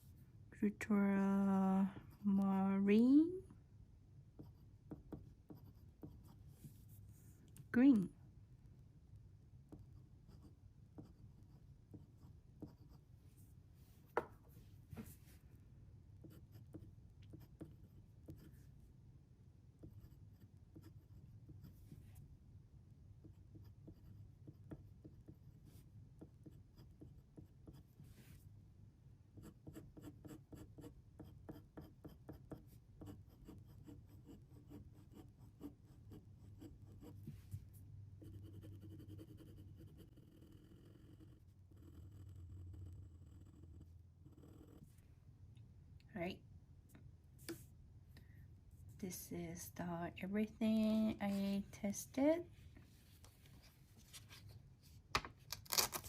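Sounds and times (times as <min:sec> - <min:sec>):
pen scratching on paper: 0:04.4 - 0:07.0, 0:09.7 - 0:13.0, 0:16.2 - 0:18.7, 0:19.8 - 0:22.0, 0:23.2 - 0:28.0, 0:29.4 - 0:37.4, 0:38.2 - 0:44.9.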